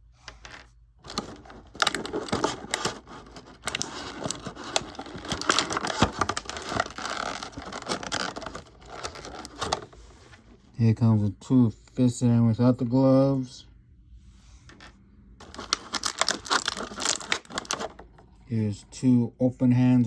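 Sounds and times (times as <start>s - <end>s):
plastic packaging crinkling: 1.0s - 10.0s, 15.4s - 18.2s.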